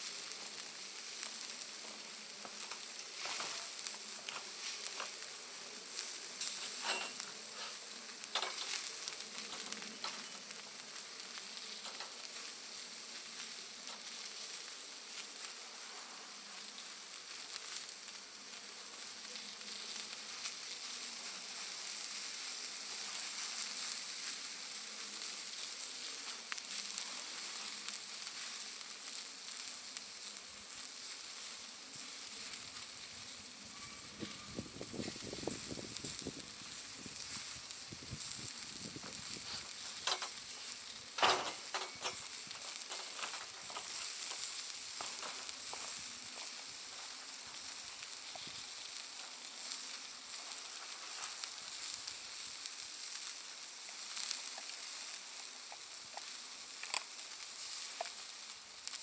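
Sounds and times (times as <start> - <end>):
charcoal popping: 0.0 - 15.6, 16.3 - 59.0
fire crackling and hissing: 0.0 - 59.0.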